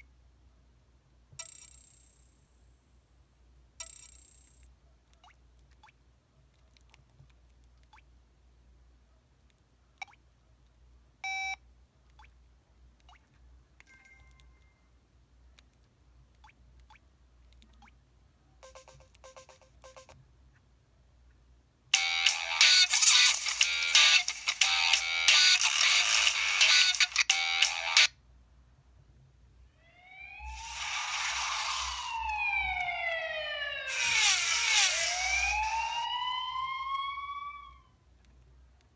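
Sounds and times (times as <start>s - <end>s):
phone ringtone melody: 18.6s - 20.1s, 22.0s - 28.1s, 30.1s - 37.8s
faint rising bleeps: 29.8s - 37.9s
electronic tone sliding in pitch: 30.0s - 37.8s
short buzzy beeps: 30.4s - 37.8s
bursts of hiss: 30.5s - 32.3s.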